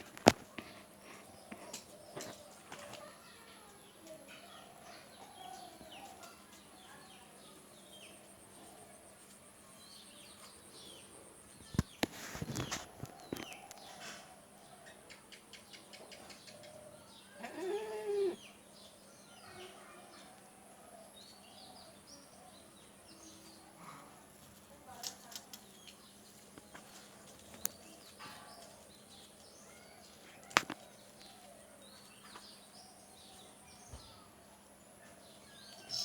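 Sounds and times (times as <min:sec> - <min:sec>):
small birds chirping: 0:00.0 - 0:36.0.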